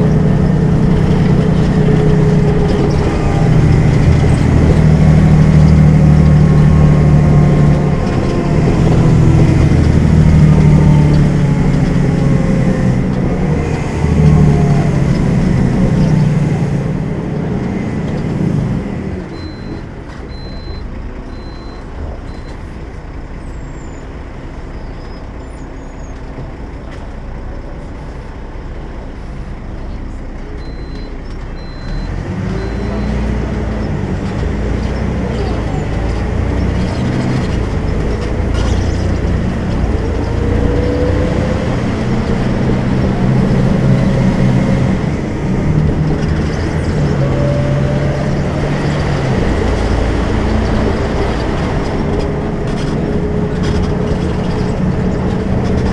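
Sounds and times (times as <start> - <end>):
bus engine running hard: 0.0 - 55.9
short high beeps: 19.4 - 22.5, 30.6 - 33.2.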